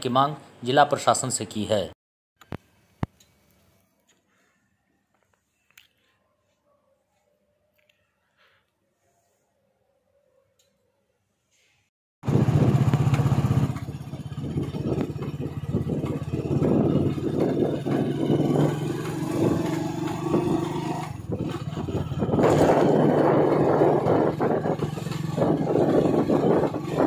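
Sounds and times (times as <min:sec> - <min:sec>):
motorcycle engines running: 0:12.2 - 0:27.0
road traffic: 0:12.2 - 0:27.0.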